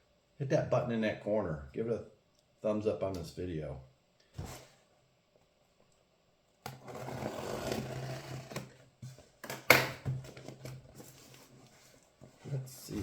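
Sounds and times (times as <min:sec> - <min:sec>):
cardboard rustling: 0:10.1 - 0:13.0.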